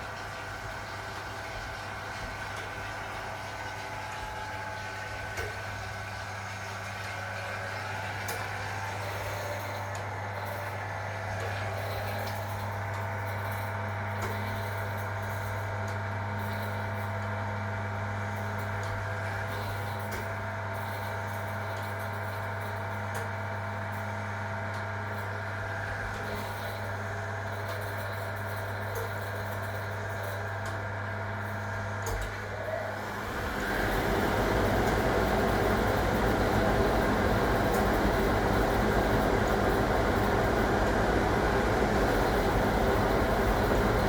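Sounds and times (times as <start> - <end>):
washing machine humming: 0.0 - 44.0.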